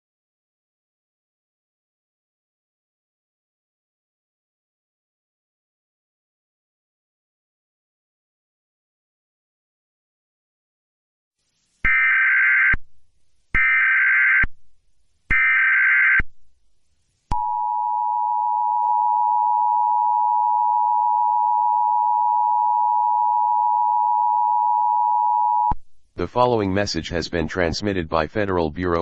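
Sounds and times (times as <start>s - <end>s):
harsh data-tone bursts: 13.6s - 14.5s, 15.3s - 16.2s.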